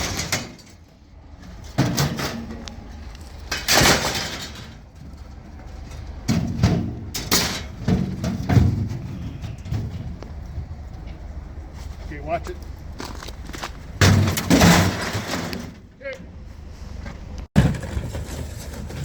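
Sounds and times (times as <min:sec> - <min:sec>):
dishwasher clunking and banging: 0:03.5 - 0:04.8, 0:06.2 - 0:10.0.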